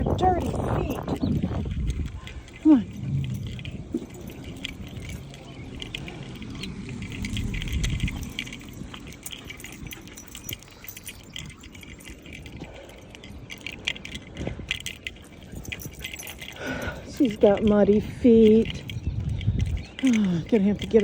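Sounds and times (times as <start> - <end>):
low rumble: 0.0 - 11.6
small metal pieces jingling: 0.0 - 21.0.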